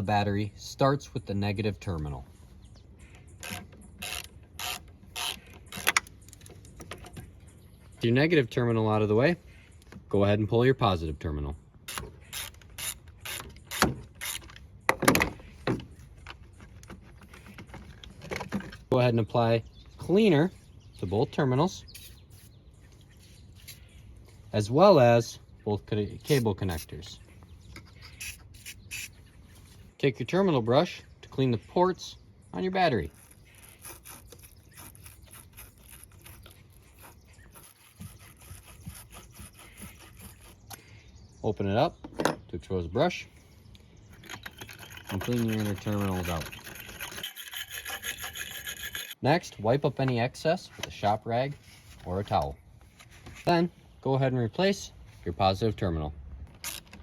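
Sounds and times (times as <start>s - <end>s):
wire brush scratching: 3.4s - 6.0s, 21.8s - 22.6s, 26.2s - 27.0s, 28.0s - 29.8s, 32.9s - 40.8s, 44.2s - 49.2s
ratchet wrench rasping: 3.4s - 6.5s, 11.9s - 14.6s, 33.1s - 40.6s, 44.2s - 49.2s.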